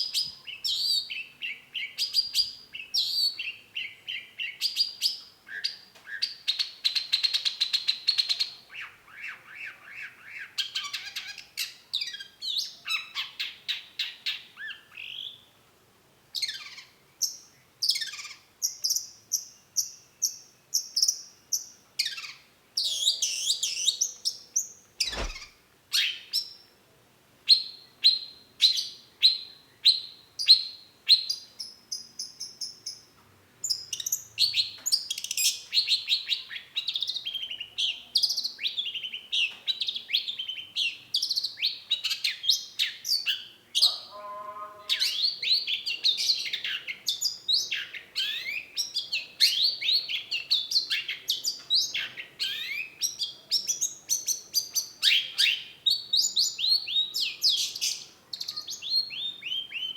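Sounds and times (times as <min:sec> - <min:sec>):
bird singing fast varied song: 0:16.3 - 0:26.6, 0:27.5 - 0:59.9.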